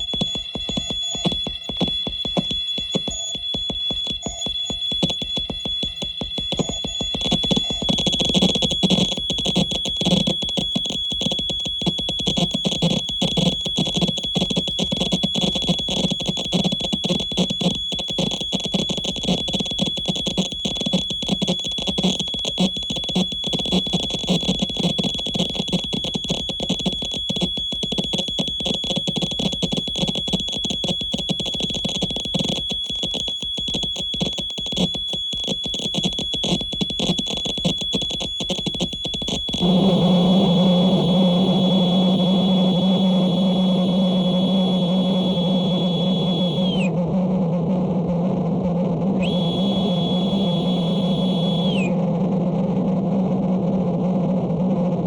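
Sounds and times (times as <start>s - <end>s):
dense crackling static: 0.0s - 55.0s
steady high electronic tone: 33.6s - 46.9s, 49.2s - 51.9s.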